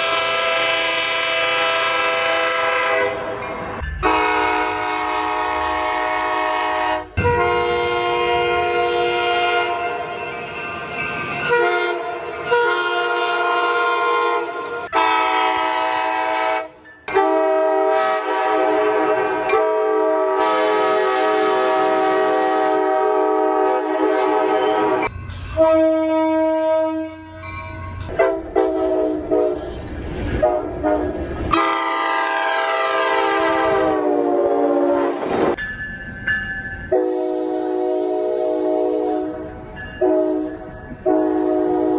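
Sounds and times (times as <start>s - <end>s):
train horn chord blasts: 0.0s - 3.4s, 4.0s - 10.2s, 11.5s - 27.5s, 28.1s - 29.7s, 30.4s - 35.6s, 36.9s - 41.9s.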